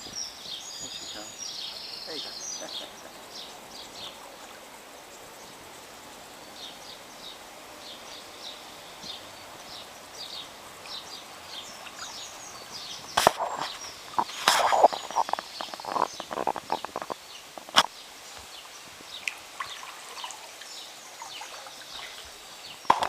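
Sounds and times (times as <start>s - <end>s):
small birds chirping: 0.0s - 23.0s
paddle splashing in water: 9.1s - 23.0s.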